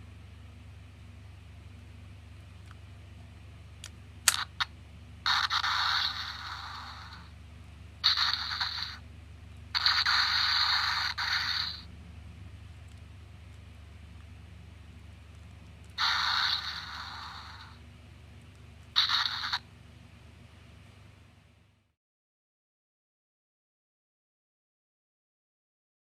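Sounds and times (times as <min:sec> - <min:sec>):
sharp plastic clicks: 0:03.8 - 0:04.7
harsh hissing scraping: 0:08.0 - 0:09.0, 0:09.8 - 0:11.9, 0:16.0 - 0:17.8.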